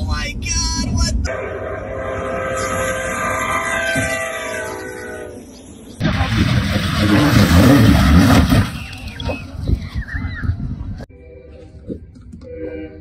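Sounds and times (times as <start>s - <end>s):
multi-note horn: 1.3s - 5.5s
heavy rumbling and crashing: 6.0s - 11.0s.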